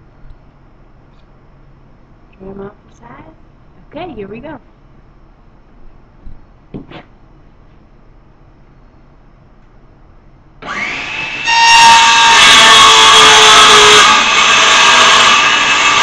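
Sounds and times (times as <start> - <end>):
circular saw cutting wood: 10.6 - 16.0.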